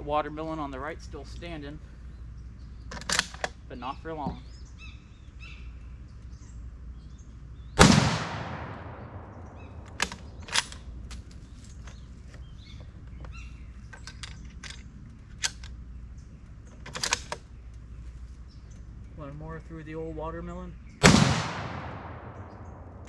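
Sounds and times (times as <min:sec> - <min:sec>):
rifle shot with echo: 0:07.8 - 0:11.3, 0:21.0 - 0:23.0
sharp clicks: 0:07.8 - 0:15.8, 0:16.6 - 0:17.9.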